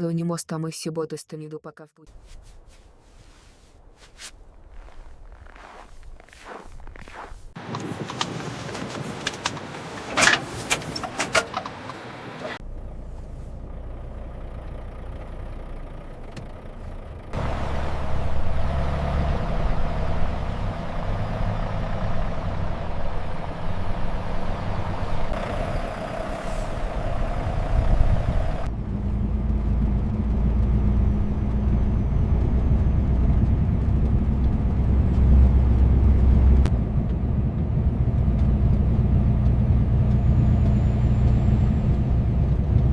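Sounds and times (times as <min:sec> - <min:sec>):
road noise: 0:02.1 - 0:42.9
truck engine drone: 0:11.3 - 0:42.9.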